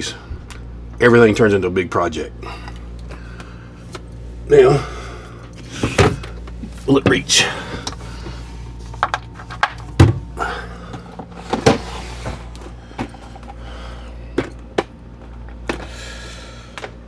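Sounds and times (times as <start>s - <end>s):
steady low hum: 0.0s - 17.0s
power cord clicks and knocks: 14.2s - 16.0s.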